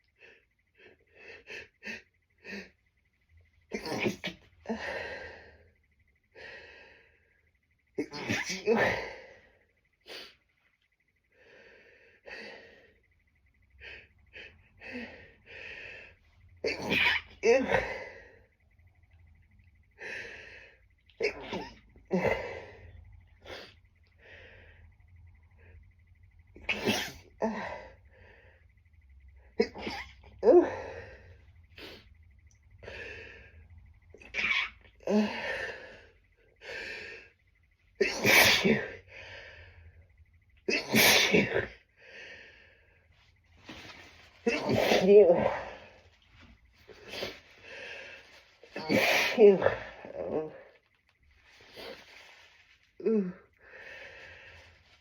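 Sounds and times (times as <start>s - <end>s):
person sneezing: 3.7s - 4.4s, 8.0s - 9.0s, 26.7s - 27.7s, 38.0s - 39.0s, 40.7s - 41.7s, 44.4s - 45.8s, 48.8s - 50.6s.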